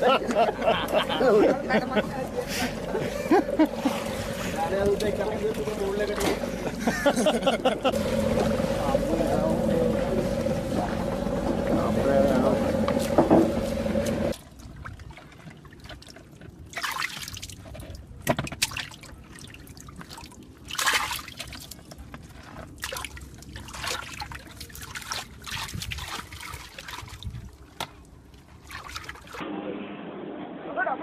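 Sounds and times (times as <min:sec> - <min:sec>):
water trickling and splashing: 0:01.9 - 0:29.4
boat motor cutting off: 0:02.0 - 0:14.4.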